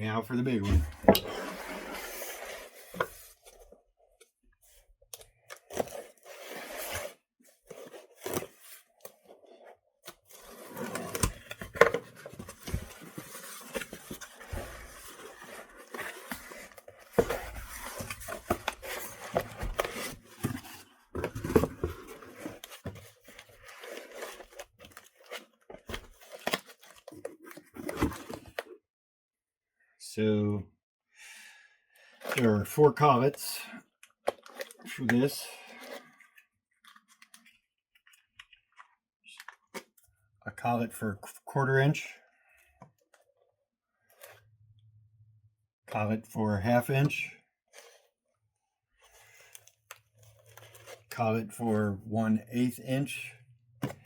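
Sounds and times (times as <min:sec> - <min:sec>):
cardboard box rustling and scraping: 0:00.6 - 0:03.8, 0:05.6 - 0:28.7, 0:49.0 - 0:51.1.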